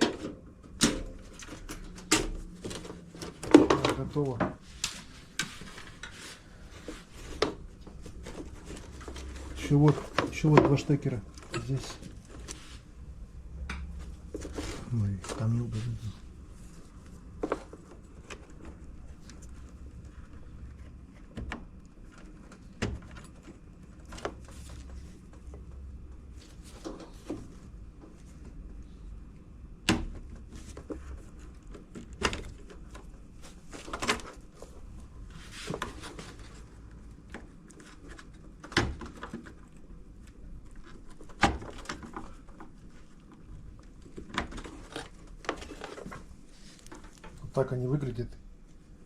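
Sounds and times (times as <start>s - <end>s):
steady low hum: 0.0s - 38.6s.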